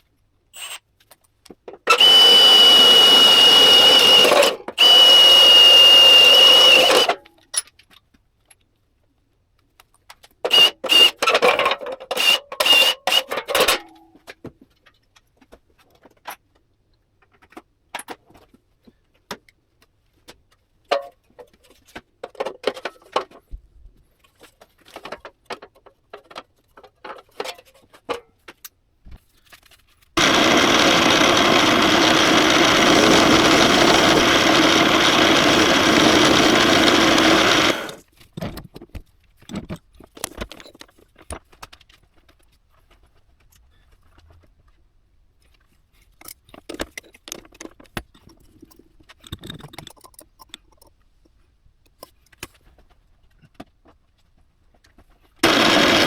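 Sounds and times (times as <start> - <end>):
power tool running: 0.6 - 0.8, 1.9 - 7.2, 10.5 - 11.2, 12.2 - 13.8, 30.2 - 38.0, 55.4 - 56.0.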